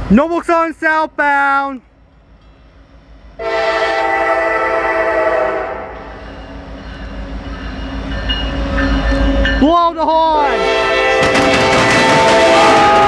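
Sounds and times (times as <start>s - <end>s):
train rumbling: 0.0s - 13.0s
locomotive air horn: 3.4s - 6.2s, 10.4s - 13.0s.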